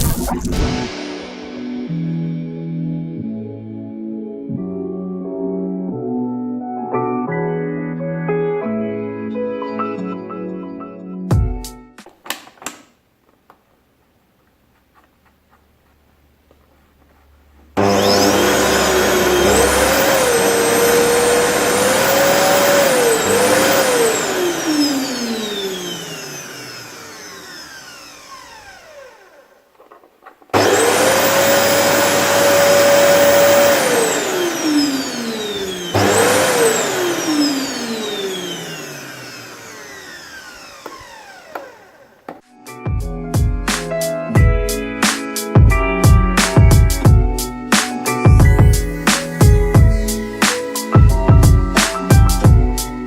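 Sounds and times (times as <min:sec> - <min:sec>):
vacuum cleaner motor whining: 0:17.8 - 0:42.5, 0:48.4 - 0:53.0.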